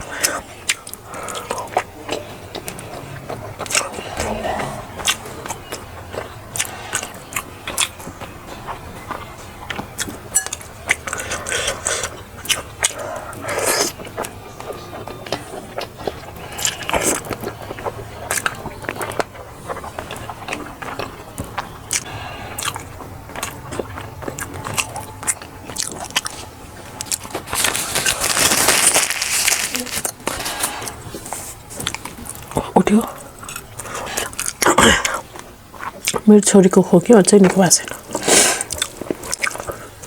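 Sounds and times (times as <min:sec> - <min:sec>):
person biting and chewing food: 0:00.0 - 0:36.3, 0:37.9 - 0:40.0.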